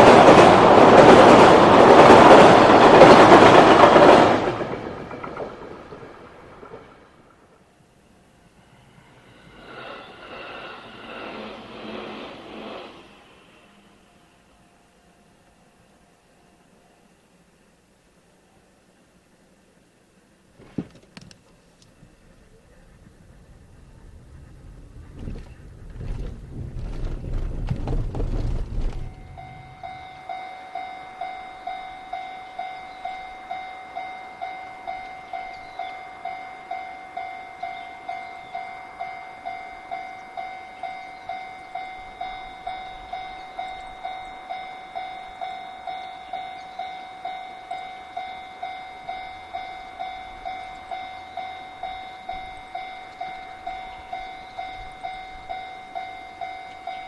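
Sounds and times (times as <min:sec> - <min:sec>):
level crossing warning bell: 0:29.0 - 0:57.0.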